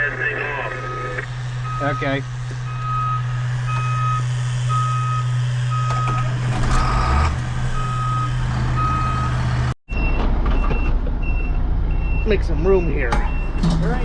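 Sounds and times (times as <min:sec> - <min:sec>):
diesel engine idling: 0:00.0 - 0:09.8
electronic warning beeper: 0:00.0 - 0:13.7.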